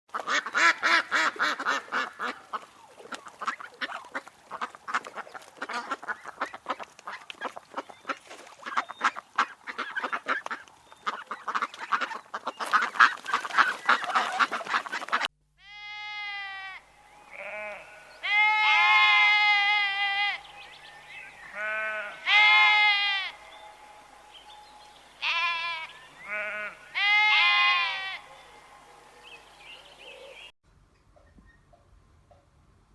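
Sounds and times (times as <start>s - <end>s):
drawn-out animal calls: 0.2s - 15.3s, 17.3s - 23.9s, 25.2s - 29.5s
flock of animals calling: 0.2s - 15.3s, 16.7s - 30.5s.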